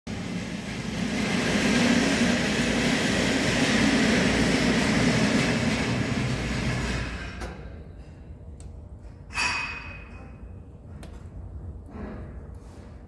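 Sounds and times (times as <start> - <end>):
stove fire rushing rumble: 0.1 - 9.6.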